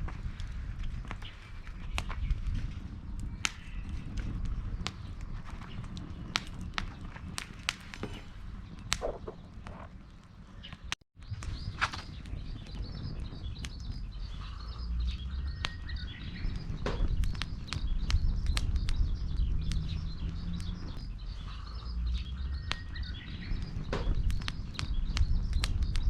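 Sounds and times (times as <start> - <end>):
small birds chirping: 0.3 - 26.0
low rumble: 11.2 - 26.0
sharp clicks and snaps: 16.5 - 21.1, 22.6 - 26.0.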